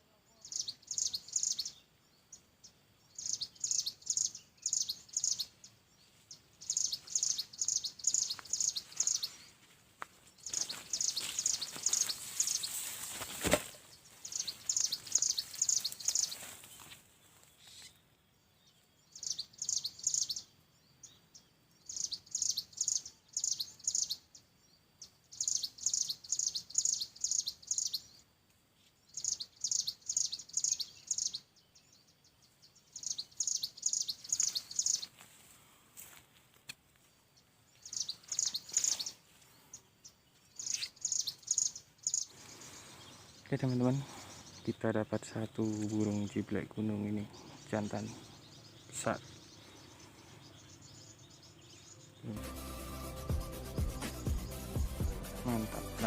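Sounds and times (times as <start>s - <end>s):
bird song of quick high chirps: 0.3s - 9.5s, 10.4s - 28.2s, 28.8s - 35.2s, 37.7s - 52.4s
rustling: 8.4s - 17.9s.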